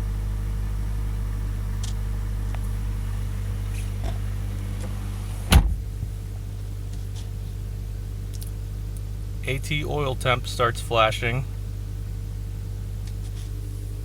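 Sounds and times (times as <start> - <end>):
car engine idling: 0.0 - 14.0
sharp thump: 5.5 - 5.8.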